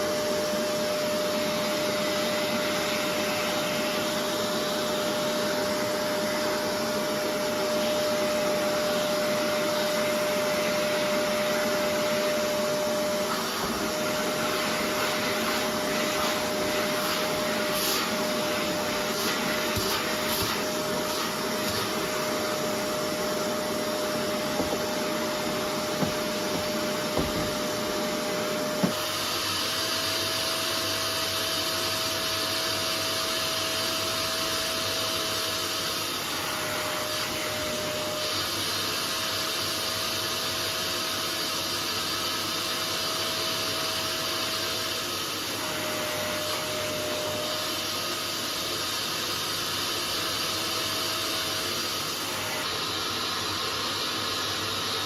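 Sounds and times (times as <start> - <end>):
upholstery cleaner motor whine: 0.0 - 55.0
suction hiss: 7.5 - 29.3.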